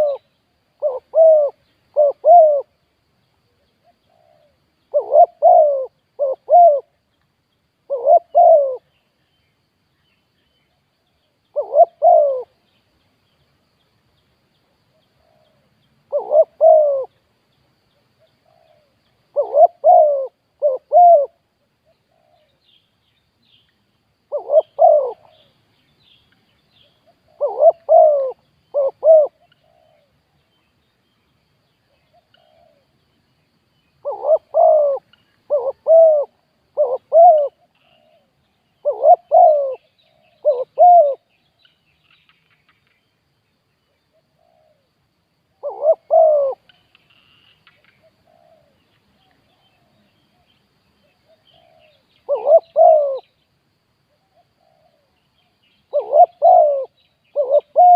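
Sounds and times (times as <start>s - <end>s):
dove cooing: 0.0s - 2.7s, 3.8s - 7.0s, 7.9s - 8.9s, 11.5s - 12.6s, 15.2s - 17.2s, 18.2s - 21.4s, 24.3s - 25.5s, 27.0s - 30.2s, 32.0s - 32.9s, 34.0s - 41.3s, 44.2s - 44.9s, 45.5s - 46.8s, 47.8s - 48.8s, 49.4s - 53.3s, 54.2s - 55.2s, 55.9s - 57.9s.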